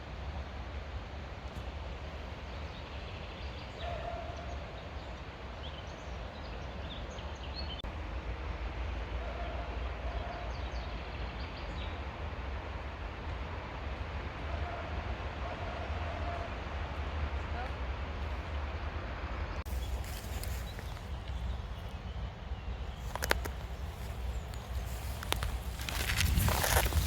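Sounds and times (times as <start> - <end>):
wind rumble on microphone: 19.5 - 27.0.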